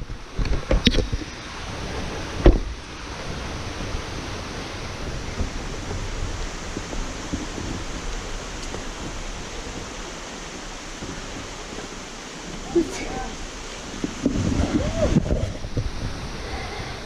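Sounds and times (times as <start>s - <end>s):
mountain creek rushing: 0.0s - 17.0s.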